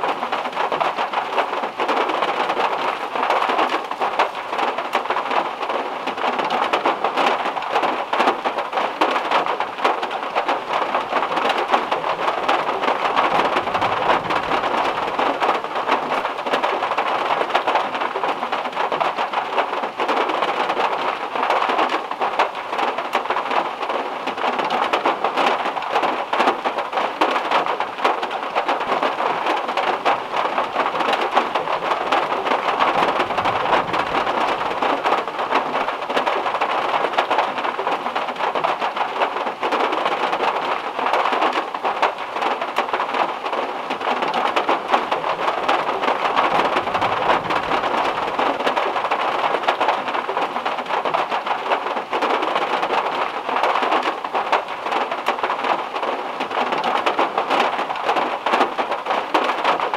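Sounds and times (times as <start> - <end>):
heavy rain drumming on metal roof: 0.0 - 59.9.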